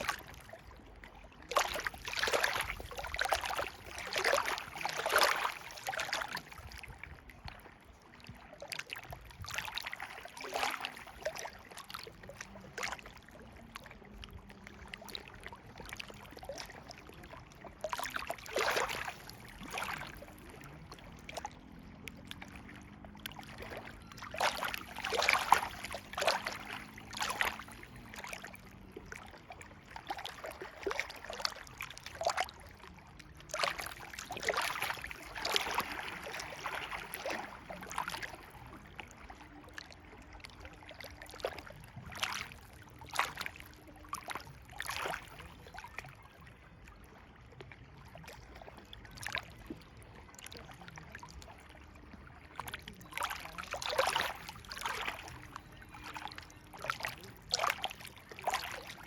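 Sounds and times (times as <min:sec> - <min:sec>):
river water rushing and splashing: 0:00.0 - 0:06.9, 0:17.8 - 0:45.3.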